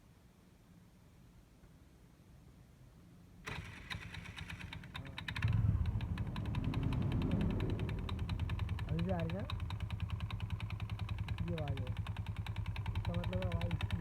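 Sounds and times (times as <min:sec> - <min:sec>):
scooter engine starting: 0:03.4 - 0:14.0
engine knocking: 0:03.5 - 0:14.0.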